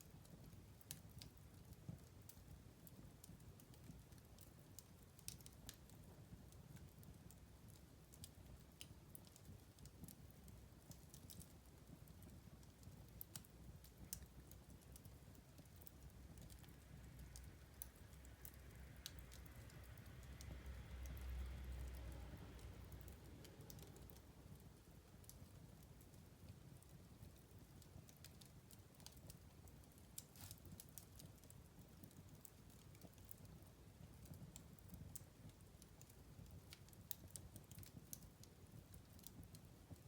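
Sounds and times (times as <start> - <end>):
soft hiss and rush: 0.0 - 40.0
wood fire crackling: 0.0 - 40.0.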